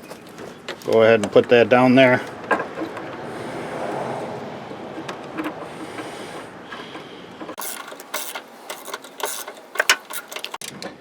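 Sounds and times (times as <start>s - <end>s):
metal parts knocking: 6.7s - 10.8s
socket ratchet clicking: 7.5s - 10.6s.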